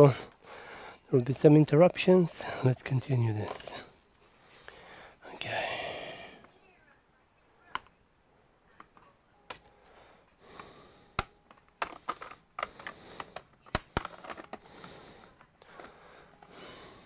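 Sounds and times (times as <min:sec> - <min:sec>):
plastic parts and tools clicking: 0:08.7 - 0:16.8.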